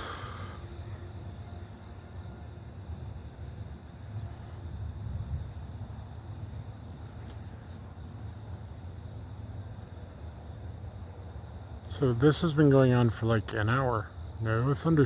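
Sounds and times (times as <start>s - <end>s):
crickets trilling: 0.0s - 15.0s
low steady rumble: 0.0s - 15.0s.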